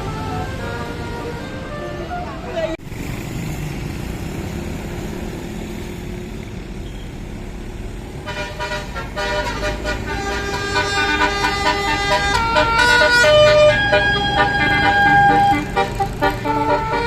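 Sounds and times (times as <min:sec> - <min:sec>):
multi-tone horn playing tune: 0:00.0 - 0:02.7, 0:08.3 - 0:17.0
bus engine rumbling: 0:00.0 - 0:17.0.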